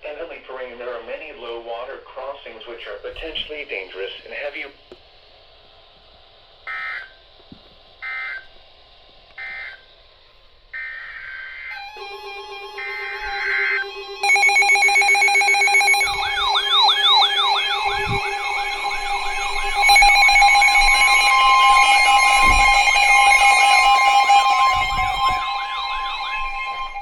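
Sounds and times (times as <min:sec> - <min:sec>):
rapid buzzing pulses: 0:10.8 - 0:27.0
rising siren-like sweep: 0:10.8 - 0:27.0
alert attention tones: 0:11.8 - 0:27.0.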